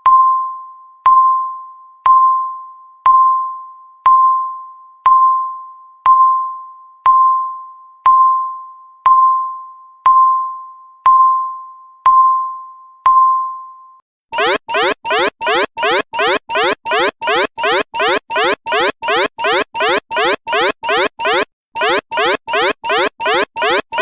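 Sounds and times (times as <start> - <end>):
electronic timer pings: 14.4 - 24.0.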